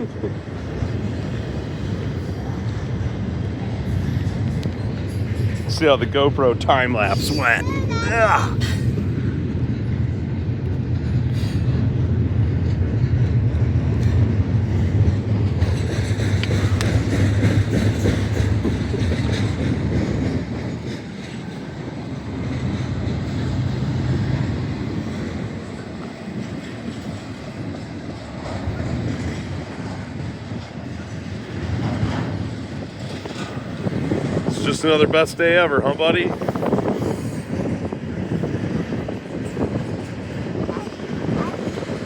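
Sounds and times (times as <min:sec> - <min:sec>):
freight train rumble: 0:00.0 - 0:42.0
wheels clacking over rail joints: 0:08.7 - 0:35.4.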